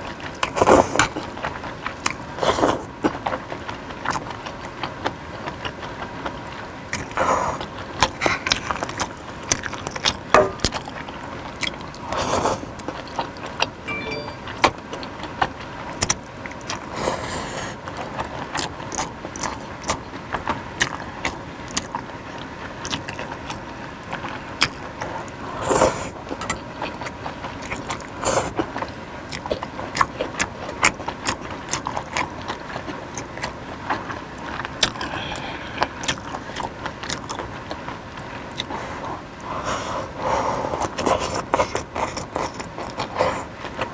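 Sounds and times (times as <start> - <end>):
wet chewing: 26.3 - 39.2, 40.8 - 43.9.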